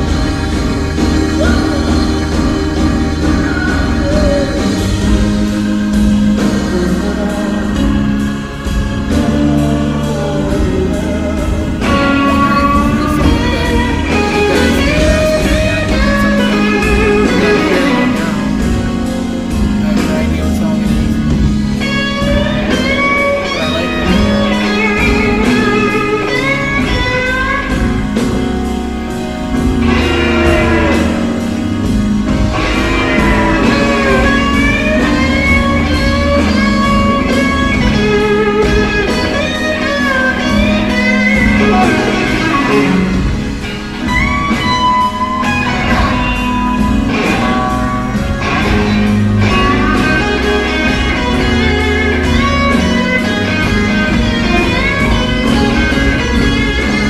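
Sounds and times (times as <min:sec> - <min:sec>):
bass line: 0:00.0 - 0:57.0
electric blues guitar lead: 0:00.0 - 0:57.0.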